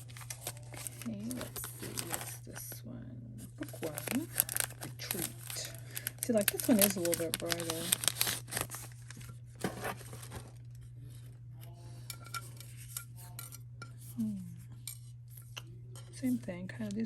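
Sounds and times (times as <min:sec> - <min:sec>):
plastic packaging clicks and rustling: 0:00.0 - 0:02.7, 0:03.6 - 0:10.7.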